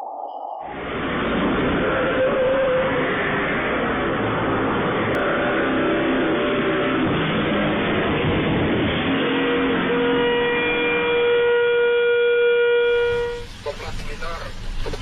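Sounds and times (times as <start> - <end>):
road traffic: 0.6 - 15.0
vehicle horn long blast: 5.2 - 7.5, 9.0 - 13.4.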